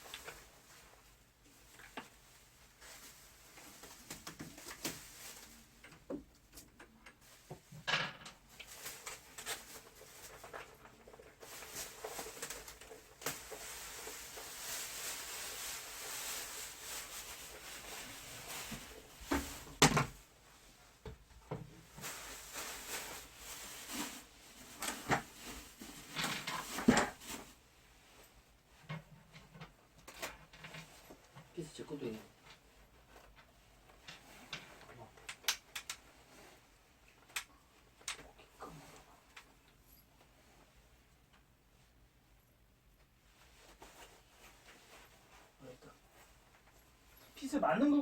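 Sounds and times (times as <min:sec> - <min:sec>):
steady hiss: 0:11.4 - 0:19.7.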